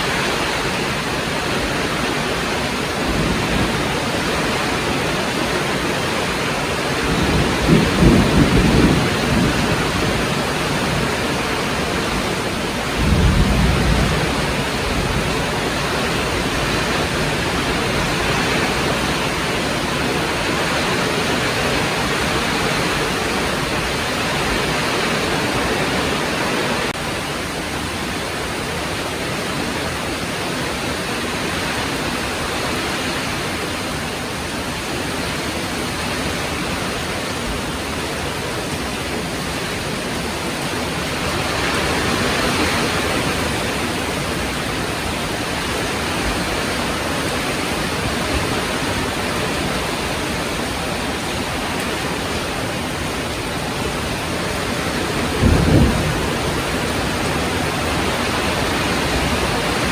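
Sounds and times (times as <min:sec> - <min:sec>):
heavy rain falling: 0:00.0 - 0:59.9
low rumbles of thunder: 0:02.9 - 0:06.0, 0:06.8 - 0:20.4, 0:54.5 - 0:59.9.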